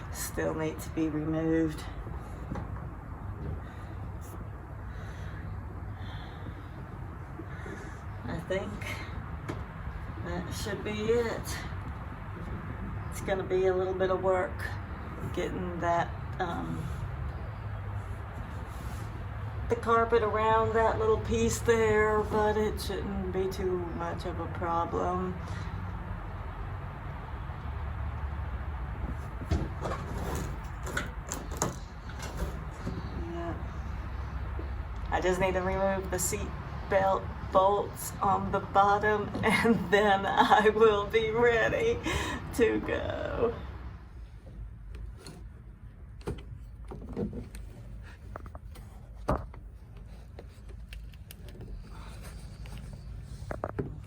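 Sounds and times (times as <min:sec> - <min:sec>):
steady low hum: 0:00.0 - 0:29.8.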